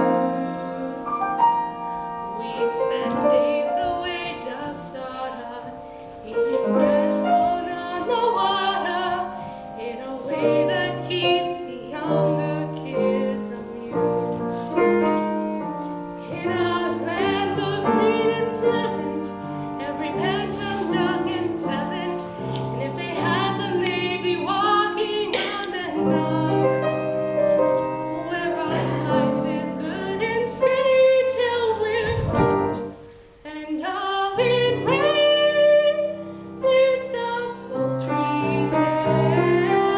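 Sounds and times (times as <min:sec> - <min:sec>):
person singing: 0:00.0 - 0:01.7, 0:16.2 - 0:39.9
piano accompaniment: 0:00.0 - 0:39.9.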